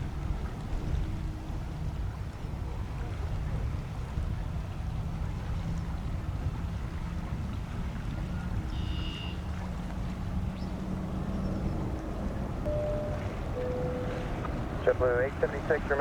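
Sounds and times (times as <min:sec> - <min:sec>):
faint hum rising in pitch: 0:12.6 - 0:14.8
short high-pitched tone: 0:12.7 - 0:14.3.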